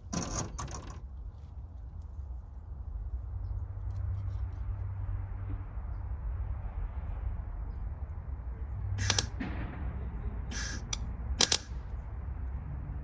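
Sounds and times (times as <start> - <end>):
steady low hum: 7.8 - 13.0
crackling arc welding bursts: 9.0 - 9.3, 10.5 - 11.7.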